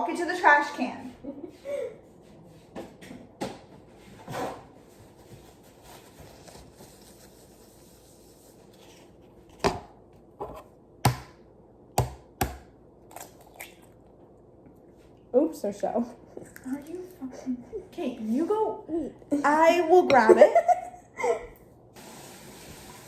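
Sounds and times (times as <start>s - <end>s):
sharp knocks on hard surface: 11.1s - 11.4s, 12.0s - 12.7s.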